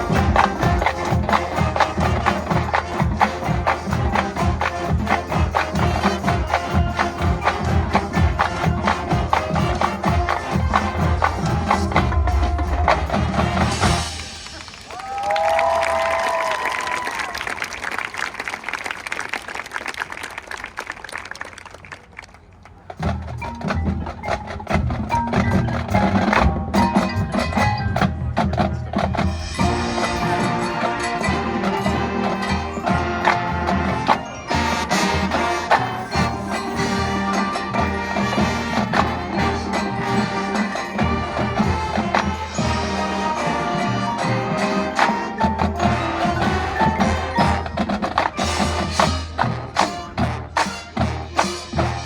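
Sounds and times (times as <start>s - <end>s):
marching band playing: 0.0s - 16.7s, 22.7s - 52.0s
applause: 14.2s - 22.8s.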